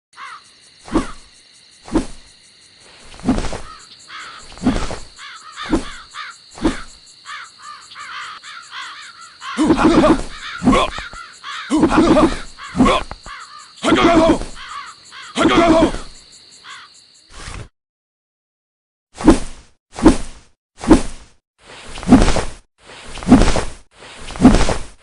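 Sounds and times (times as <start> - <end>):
caw-like cries: 0.2 - 1.2, 3.6 - 4.5, 5.2 - 17.0
punch hits with swish: 0.9 - 1.2, 1.9 - 2.2, 3.2 - 3.7, 4.6 - 5.1, 19.2 - 21.4, 22.0 - 22.6, 23.2 - 25.0.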